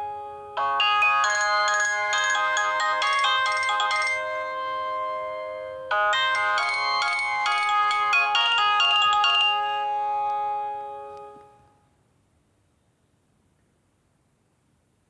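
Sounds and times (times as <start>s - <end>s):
phone ringtone melody: 0.6s - 11.5s.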